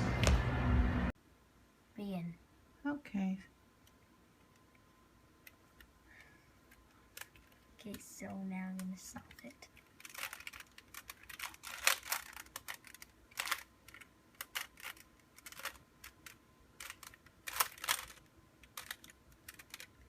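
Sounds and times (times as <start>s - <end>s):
puzzle cube clicking: 5.4s - 8.1s, 8.7s - 20.0s.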